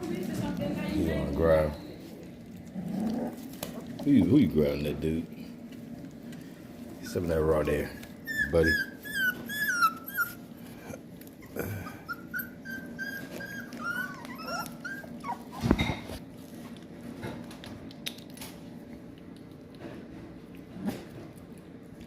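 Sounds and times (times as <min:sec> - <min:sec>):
puppy whining: 0:07.8 - 0:16.3.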